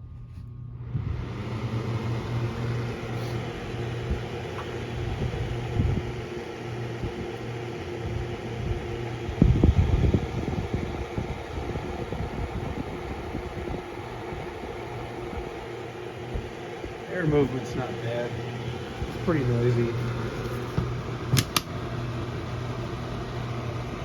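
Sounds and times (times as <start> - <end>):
table fan humming: 0.0 - 24.0.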